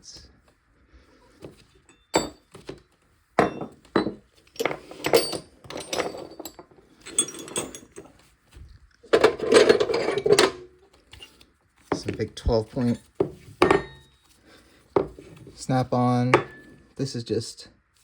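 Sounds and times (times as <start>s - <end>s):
steel wrenches clinking: 1.8s - 2.7s, 3.4s - 8.2s, 9.1s - 14.2s, 16.3s - 16.9s
metallic clattering rattle: 4.6s - 8.2s, 9.1s - 11.3s.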